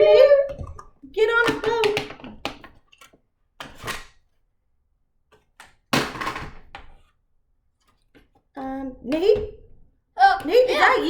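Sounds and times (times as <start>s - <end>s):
props knocking and clicking: 0.5s - 4.1s.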